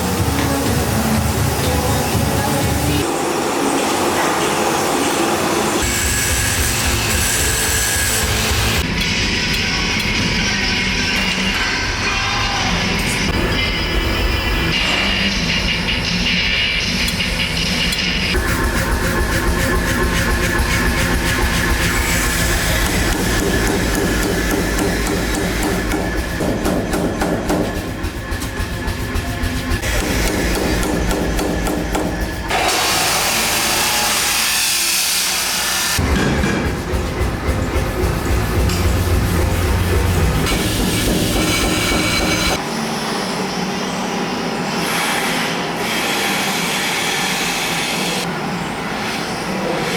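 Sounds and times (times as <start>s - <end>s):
metal grinder on steel: 5.7s - 8.8s, 18.4s - 26.4s, 32.5s - 36.5s, 38.5s - 42.6s
hammer striking steel: 19.2s - 32.7s, 36.0s - 42.6s.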